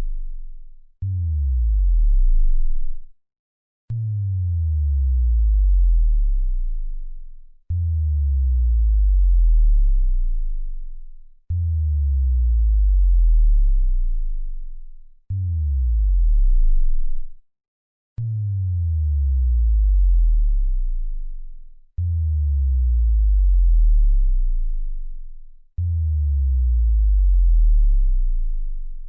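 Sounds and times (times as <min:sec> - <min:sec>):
synthesized bass drop: 0:01.1 - 0:03.0, 0:15.4 - 0:17.3, 0:18.2 - 0:21.3, 0:22.0 - 0:25.2, 0:25.8 - 0:29.0.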